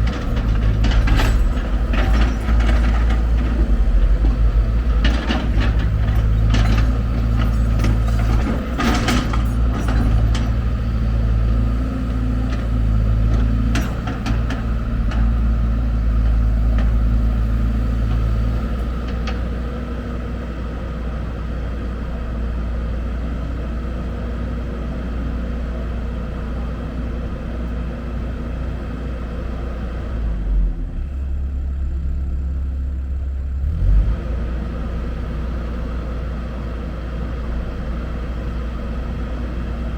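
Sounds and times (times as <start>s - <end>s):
sharp knocks and clatter: 0.0s - 11.0s, 12.3s - 19.6s
heavy diesel machinery running: 0.0s - 39.9s.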